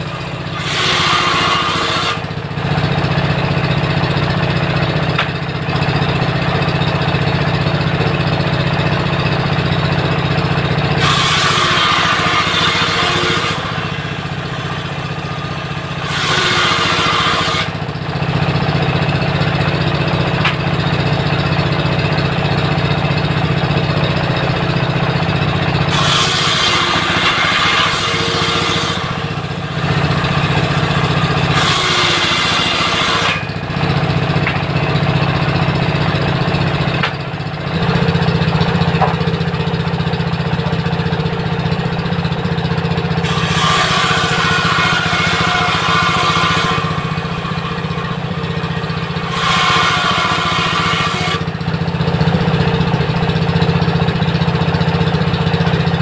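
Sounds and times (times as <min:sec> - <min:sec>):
circular saw ripping wood: 0:00.0 - 0:05.7, 0:10.5 - 0:19.7, 0:25.0 - 0:37.3, 0:43.2 - 0:51.8
diesel engine humming: 0:00.0 - 0:56.0.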